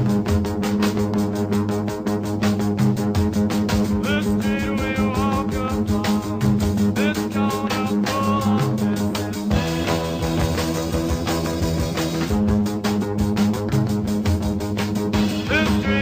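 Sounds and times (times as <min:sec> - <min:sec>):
rock song: 0:00.0 - 0:16.0
person singing: 0:03.9 - 0:10.2, 0:15.2 - 0:16.0.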